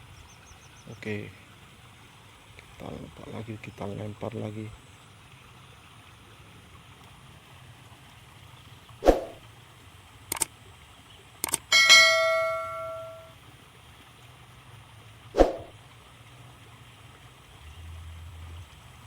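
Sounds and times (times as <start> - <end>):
sharp clicks: 11.4 - 11.7
metal object ringing like bell: 11.7 - 13.3.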